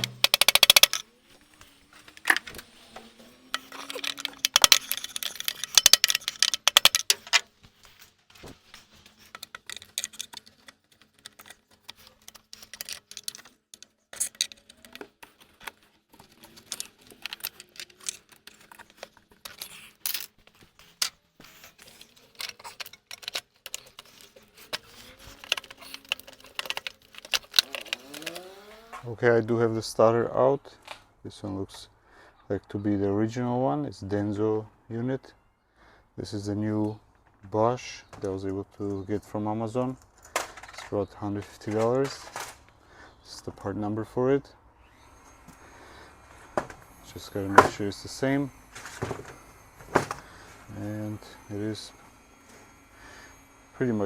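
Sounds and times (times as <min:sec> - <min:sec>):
metal tools clinking: 0:00.0 - 0:29.0, 0:45.4 - 0:54.0.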